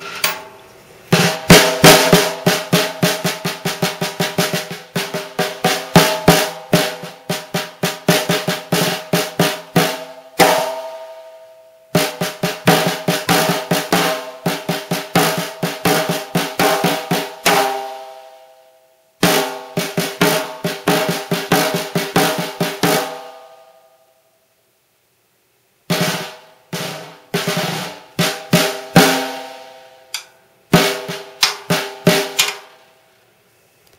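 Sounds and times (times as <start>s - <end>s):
snare drum strokes and rolls: 1.1s - 10.9s, 12.0s - 18.0s, 19.2s - 23.2s, 25.9s - 29.7s, 30.7s - 32.7s.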